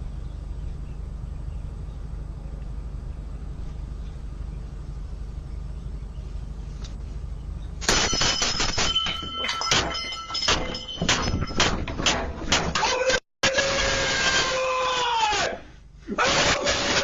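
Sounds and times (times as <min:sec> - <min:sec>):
steady low hum: 0:00.0 - 0:12.8, 0:15.6 - 0:16.2
loud rapid bangs and crashes: 0:07.8 - 0:12.9.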